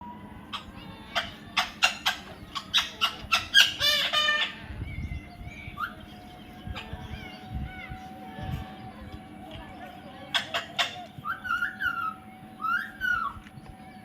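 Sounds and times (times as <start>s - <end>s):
parrot squawking: 0.5s - 4.7s, 5.7s - 8.0s, 10.2s - 13.4s.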